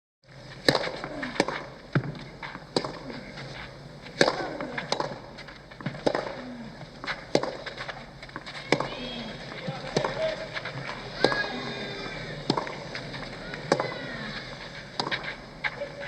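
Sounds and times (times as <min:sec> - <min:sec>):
court-side background noise: 0:00.2 - 0:16.0
tennis ball struck by racket: 0:00.6 - 0:15.9
tennis ball bouncing on court: 0:00.6 - 0:16.0.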